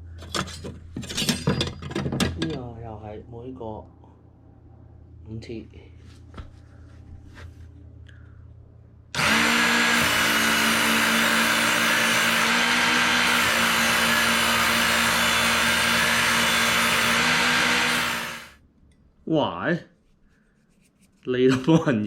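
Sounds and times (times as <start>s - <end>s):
belt sharpener motor humming: 9.2s - 18.6s.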